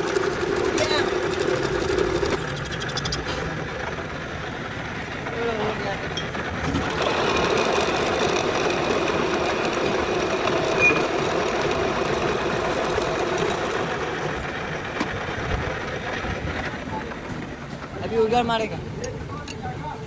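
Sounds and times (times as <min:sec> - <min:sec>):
lathe running: 0:00.0 - 0:20.0.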